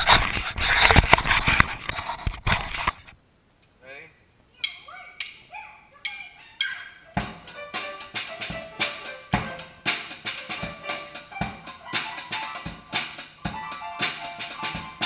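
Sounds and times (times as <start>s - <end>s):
pitched music: 7.1s - 15.0s
drum kit steady beat: 7.2s - 15.0s.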